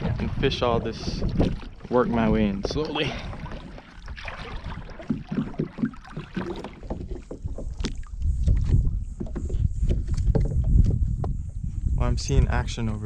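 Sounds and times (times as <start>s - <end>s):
water sloshing around boat: 0.0s - 13.0s
wind rumbling on microphone: 0.0s - 13.0s.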